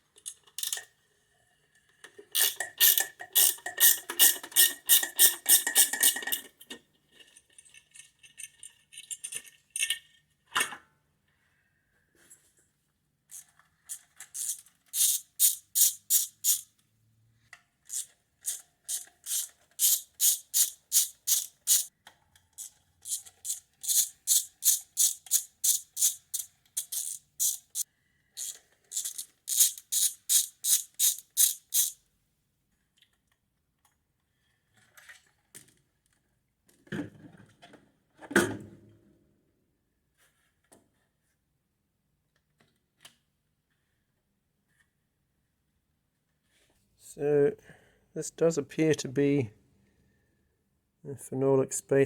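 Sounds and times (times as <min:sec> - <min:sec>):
ratchet wrench clicking: 0:02.4 - 0:06.4, 0:13.3 - 0:16.7, 0:17.9 - 0:21.9, 0:22.6 - 0:32.0.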